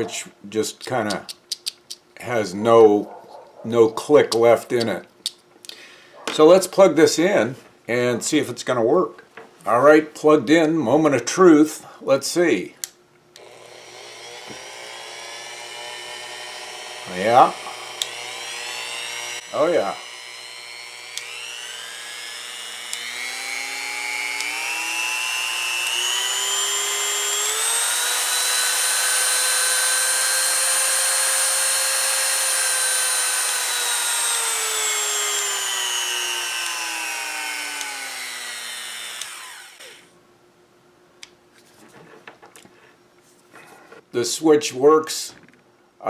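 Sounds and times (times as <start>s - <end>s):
rotary tool motor whining: 13.4s - 40.1s.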